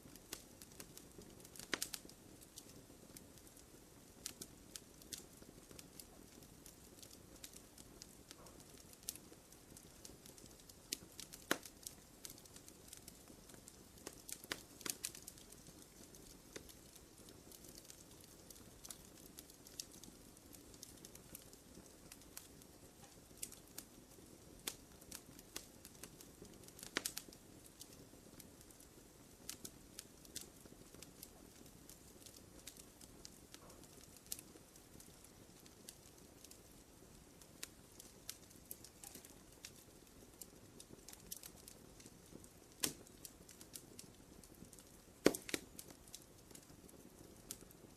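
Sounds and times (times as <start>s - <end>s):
campfire crackling: 0.0s - 47.9s.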